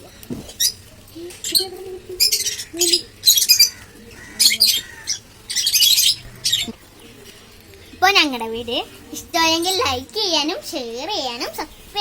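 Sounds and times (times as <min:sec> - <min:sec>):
lovebirds chattering: 0:00.0 - 0:10.5
shrill bird chirps and squawks: 0:01.4 - 0:06.8.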